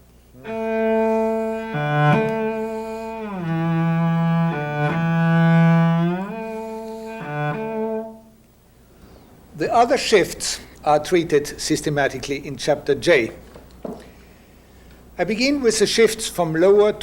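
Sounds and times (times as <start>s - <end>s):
cello bowed notes with slides: 0.4s - 8.4s.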